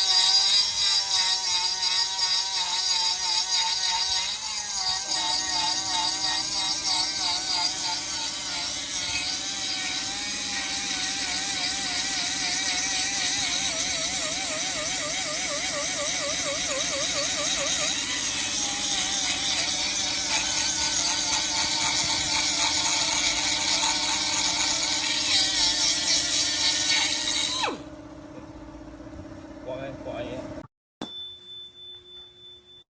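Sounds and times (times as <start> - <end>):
air die grinder whining: 0.0 - 28.0.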